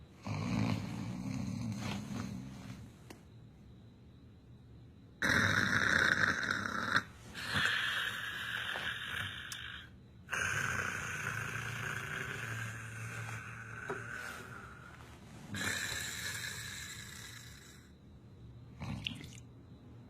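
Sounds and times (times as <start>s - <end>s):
person snoring: 0.2s - 2.9s, 5.2s - 18.0s.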